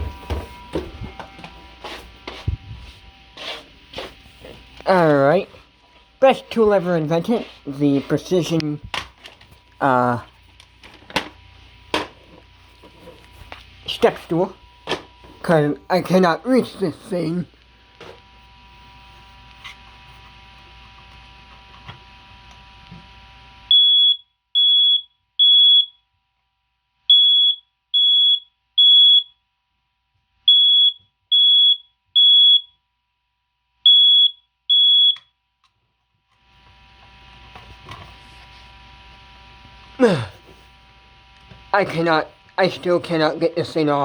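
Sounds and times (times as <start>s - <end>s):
smoke detector alarm beeps: 0.0s - 3.2s, 23.7s - 26.0s, 27.1s - 29.4s, 30.4s - 32.8s, 33.8s - 35.4s.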